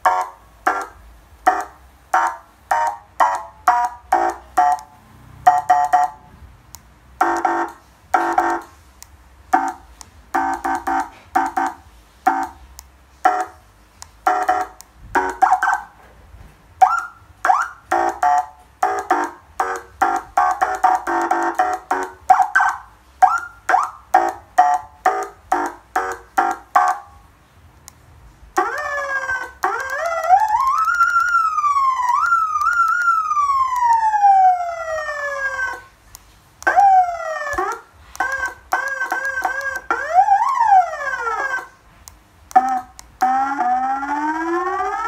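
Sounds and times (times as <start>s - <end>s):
electronic siren horn blasts: 7.2s - 8.7s, 28.6s - 35.9s, 36.7s - 41.7s, 42.6s - 45.0s
siren rising chirps: 28.6s - 35.9s, 36.7s - 41.7s, 42.6s - 45.0s.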